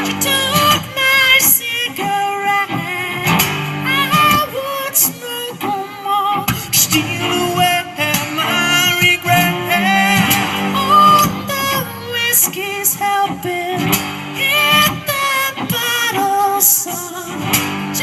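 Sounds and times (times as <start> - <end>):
person singing: 0.0 - 18.0
strummed guitar: 0.0 - 18.0
bass line: 6.9 - 12.2.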